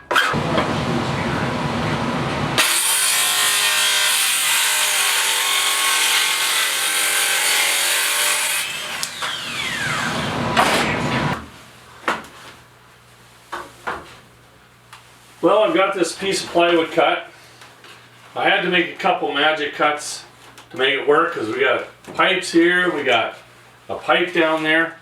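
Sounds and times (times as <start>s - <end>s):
power saw cutting plywood: 0.0s - 11.4s.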